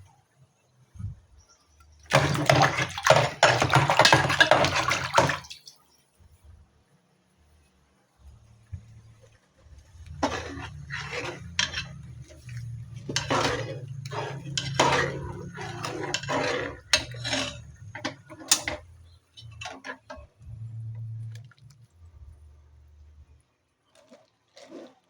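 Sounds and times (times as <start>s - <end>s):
utensil scraping a cooking pot: 2.1s - 5.4s, 9.0s - 21.6s, 23.9s - 25.0s
low steady hum: 6.2s - 23.5s.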